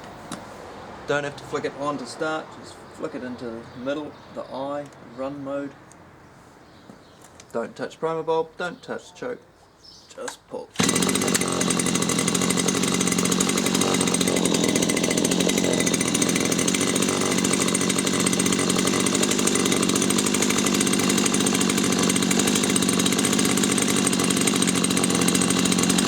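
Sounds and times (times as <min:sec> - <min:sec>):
petrol engine running: 0:10.8 - 0:26.0.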